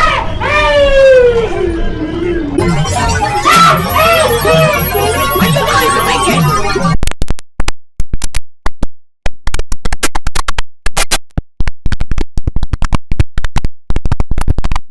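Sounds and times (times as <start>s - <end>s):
glitchy chopped synthesizer stutter: 2.6s - 7.0s.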